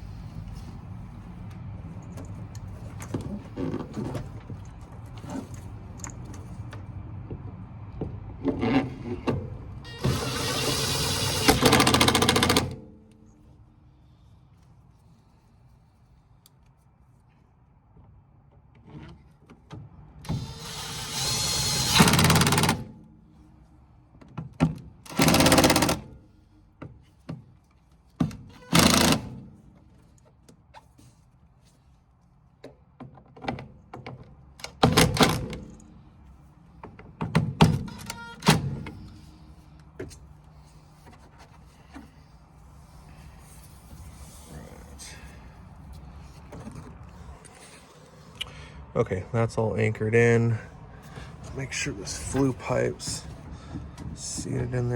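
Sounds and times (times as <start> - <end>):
cordless drill driving screws: 9.9 - 12.7, 20.3 - 22.9, 25.1 - 26.0
metal parts clicking and knocking: 11.4 - 12.8, 21.1 - 22.9.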